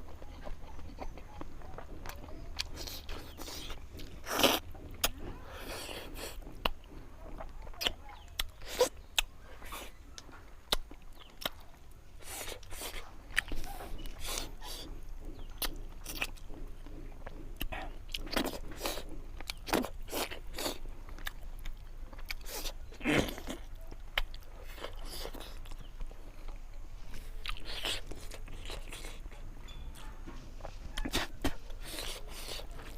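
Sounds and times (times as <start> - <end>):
crunchy chewing: 0.0 - 32.9
wet mouth sounds: 2.0 - 10.0, 30.6 - 32.9.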